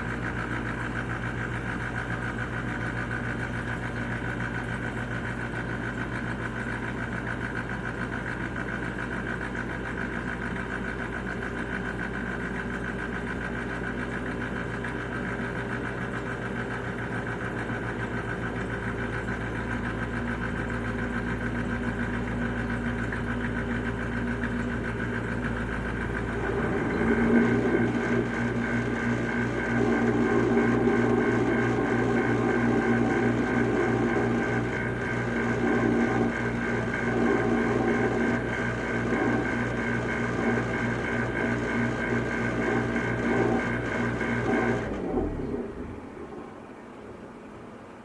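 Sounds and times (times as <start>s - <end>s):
dishwasher motor hum: 0.0s - 48.0s.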